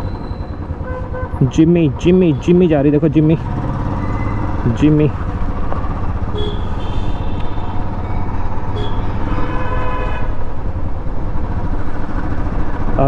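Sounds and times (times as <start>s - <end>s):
motorcycle engine running: 0.0s - 9.8s, 10.4s - 13.0s
vehicle horns honking: 0.0s - 10.4s.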